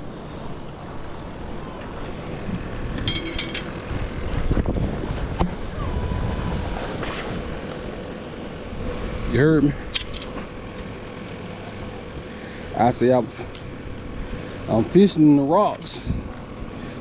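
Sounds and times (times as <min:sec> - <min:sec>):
wind rumbling on microphone: 0:01.3 - 0:10.4.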